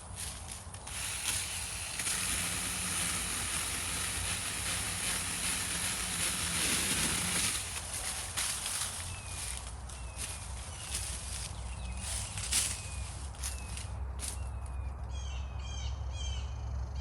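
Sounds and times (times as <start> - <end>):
mini chainsaw cutting wood: 0.0 - 9.6
faint motor hum: 0.0 - 17.0.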